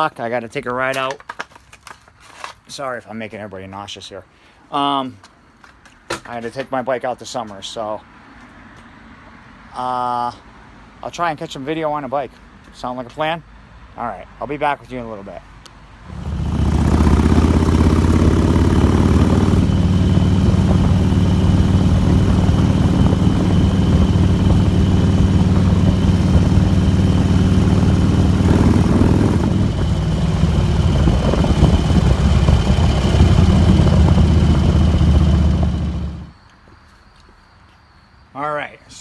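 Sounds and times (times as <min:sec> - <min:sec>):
constant rushing noise: 0:16.1 - 0:36.3
motorcycle engine running: 0:16.1 - 0:36.3.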